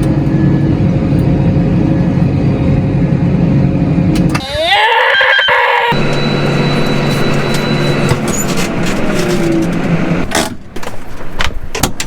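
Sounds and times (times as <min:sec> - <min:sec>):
tractor engine running: 0:06.0 - 0:11.8.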